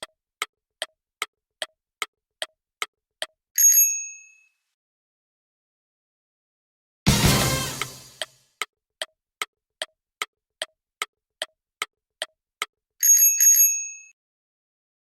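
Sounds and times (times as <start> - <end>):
clock-like ticks: 0.0 - 3.4, 7.8 - 12.7
sudden crash: 7.1 - 8.2.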